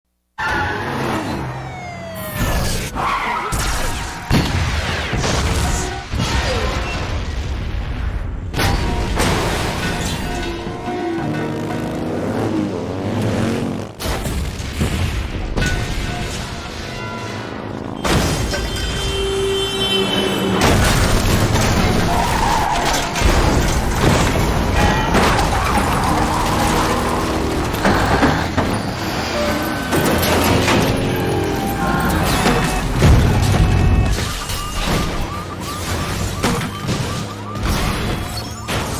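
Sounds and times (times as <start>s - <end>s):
car engines: 0.4s - 7.3s, 8.3s - 14.6s, 15.2s - 38.9s
tyres skidding: 9.0s - 14.0s, 16.4s - 38.9s
heavy crash smashes and booms: 20.6s - 38.9s.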